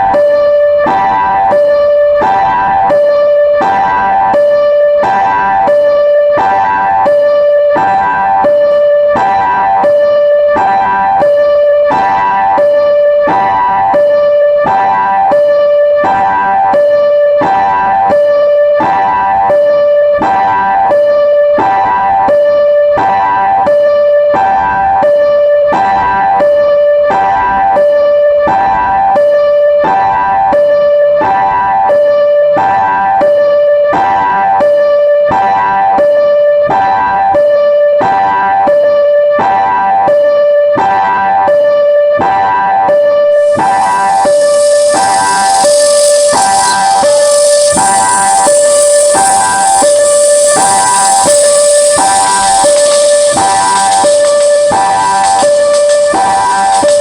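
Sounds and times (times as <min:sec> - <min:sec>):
level crossing alarm alternating notes: 0:42.8 - 0:57.0.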